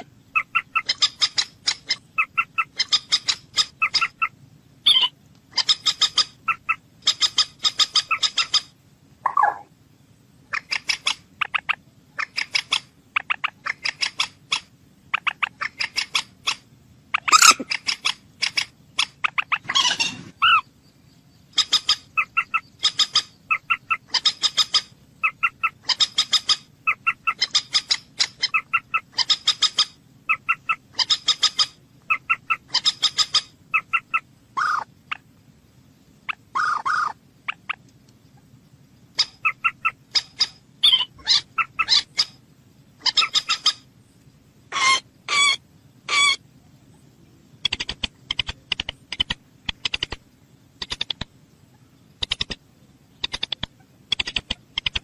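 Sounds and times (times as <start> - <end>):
fast run of short clicks: 47.7 - 50.2, 53.2 - 55.0.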